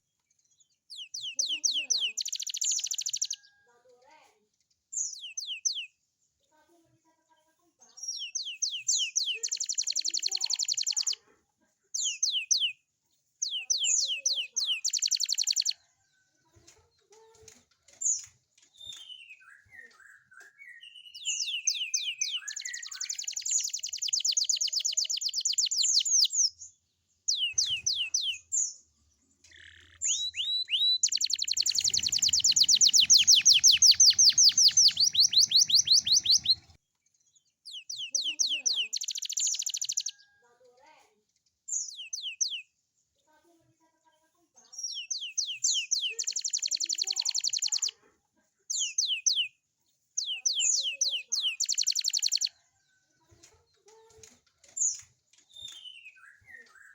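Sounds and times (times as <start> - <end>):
canary singing trills and whistles: 0.9 - 3.6, 4.9 - 6.0, 8.0 - 11.2, 12.0 - 12.8, 13.4 - 15.8, 18.0 - 28.8, 29.4 - 36.8, 37.7 - 40.3, 41.7 - 42.8, 44.7 - 48.0, 48.7 - 49.6, 50.2 - 53.0, 54.7 - 56.9.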